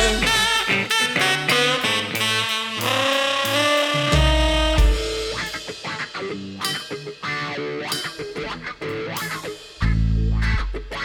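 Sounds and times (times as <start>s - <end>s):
plucked guitar notes: 0.0s - 1.7s, 3.9s - 11.0s
live band music: 0.0s - 9.9s.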